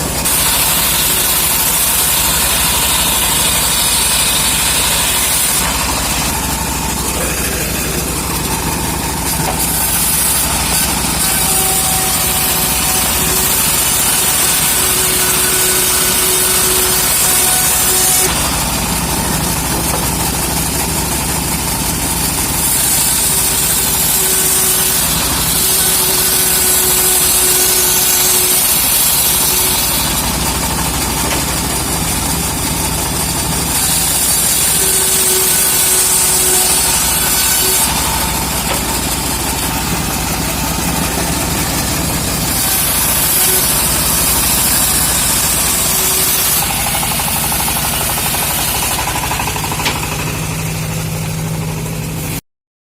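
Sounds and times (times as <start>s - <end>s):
saw blade cutting log: 0.0s - 52.4s
sawmill engine running: 0.0s - 52.4s.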